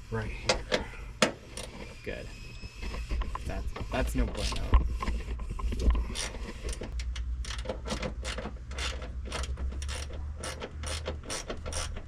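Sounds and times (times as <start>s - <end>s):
ratchet wrench clicking: 7.0s - 12.0s.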